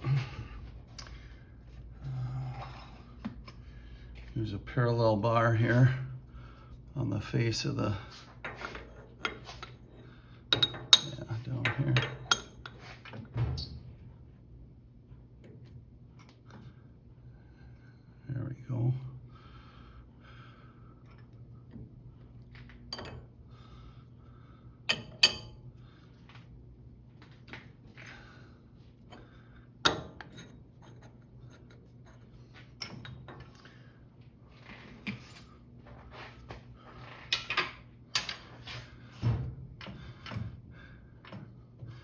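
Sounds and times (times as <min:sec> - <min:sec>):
faint steady hum: 0:00.0 - 0:42.0
metal tools clinking and knocking: 0:10.5 - 0:12.8, 0:22.9 - 0:23.3.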